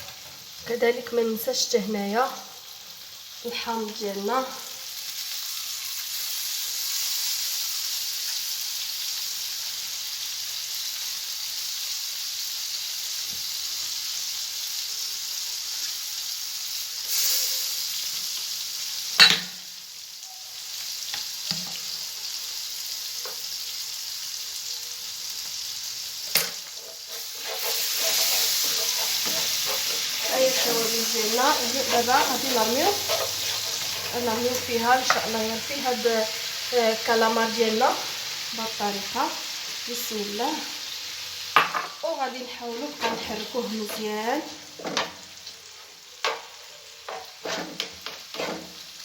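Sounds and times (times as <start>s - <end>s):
oil sizzling in a frying pan: 0.0s - 49.0s
sharp knocks against pan: 19.2s - 19.6s.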